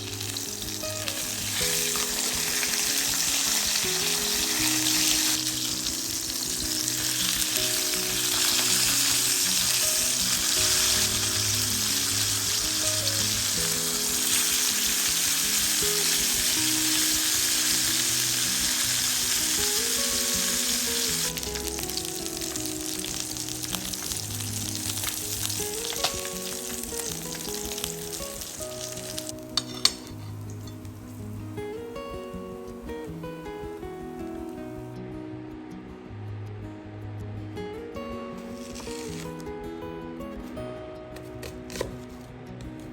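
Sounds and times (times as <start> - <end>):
food sizzling in hot oil: 0.0 - 31.6, 38.4 - 39.4
soft background music: 0.0 - 42.9.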